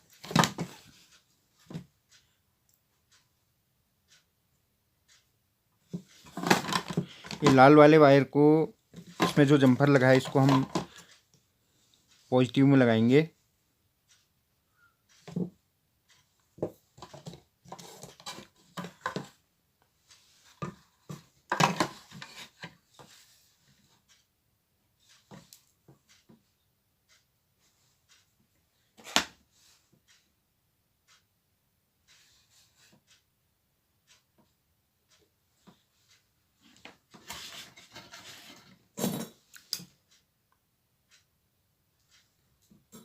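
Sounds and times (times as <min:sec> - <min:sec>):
tools clicking and knocking: 0:05.8 - 0:07.7, 0:08.9 - 0:11.2, 0:15.1 - 0:19.4, 0:20.2 - 0:23.2, 0:36.6 - 0:40.0, 0:42.1 - 0:43.0
scraping and rubbing: 0:17.0 - 0:19.4, 0:36.1 - 0:39.4.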